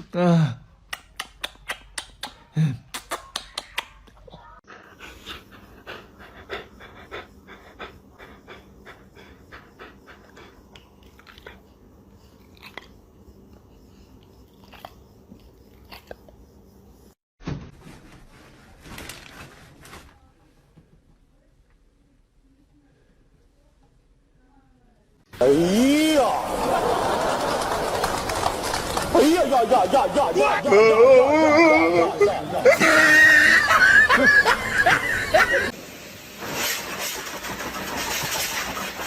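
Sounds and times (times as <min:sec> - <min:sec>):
dog panting: 0:04.6 - 0:12.4.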